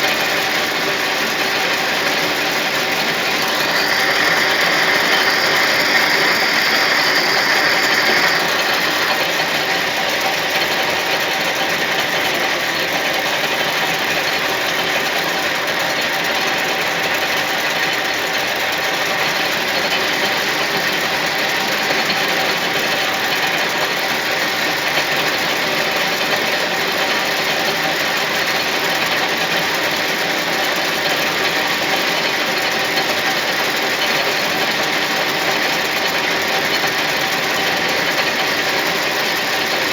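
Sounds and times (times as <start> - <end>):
high-pitched machine noise: 0.0 - 12.8
lathe humming: 0.1 - 12.3.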